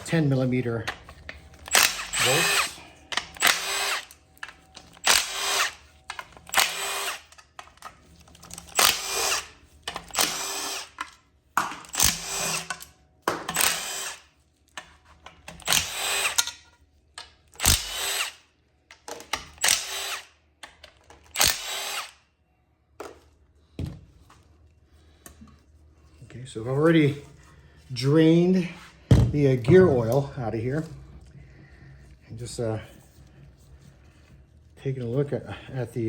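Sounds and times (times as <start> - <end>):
cordless power drill spinning: 1.0 - 11.2, 11.8 - 12.9, 13.5 - 14.4, 15.5 - 16.6, 17.6 - 18.5, 19.5 - 20.4, 21.2 - 22.2.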